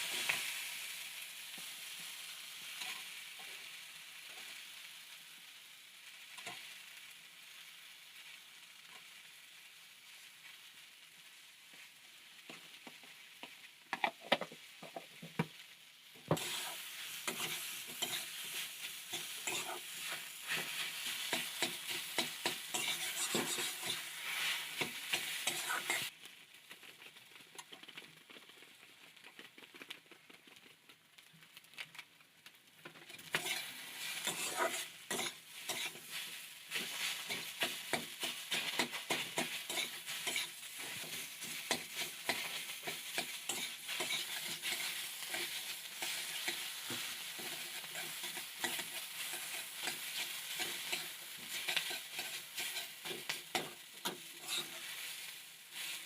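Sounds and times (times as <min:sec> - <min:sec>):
food sizzling in hot oil: 0:00.0 - 0:56.0
spoon scraping a pan: 0:02.6 - 0:03.2, 0:16.3 - 0:26.1, 0:33.0 - 0:56.0.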